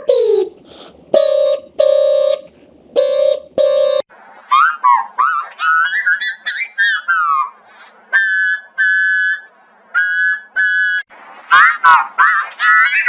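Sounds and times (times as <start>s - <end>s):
electronically altered children's song: 0.0s - 13.0s
whistle-like falling tone: 8.1s - 11.1s.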